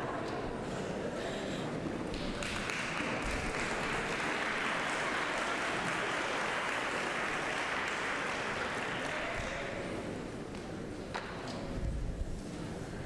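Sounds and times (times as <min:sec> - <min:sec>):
large audience applauding: 0:02.1 - 0:09.8.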